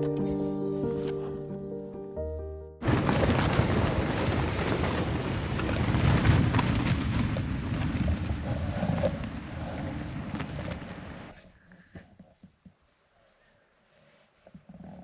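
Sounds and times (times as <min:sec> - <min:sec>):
background music: 0:00.0 - 0:02.8.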